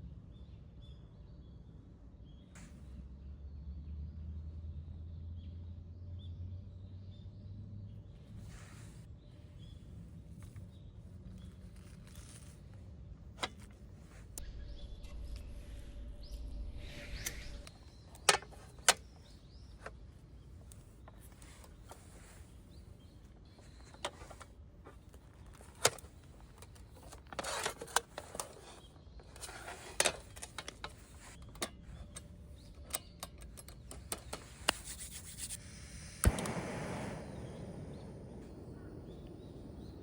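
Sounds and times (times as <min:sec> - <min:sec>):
rustling: 0:08.3 - 0:32.8
sharp clicks and knocks: 0:25.1 - 0:35.6.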